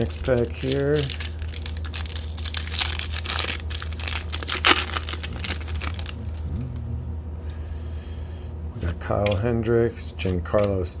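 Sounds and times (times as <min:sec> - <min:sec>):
plastic wrapper crinkling: 0:00.0 - 0:06.7
wrapper ripping: 0:00.0 - 0:06.8
low hum: 0:00.0 - 0:10.0.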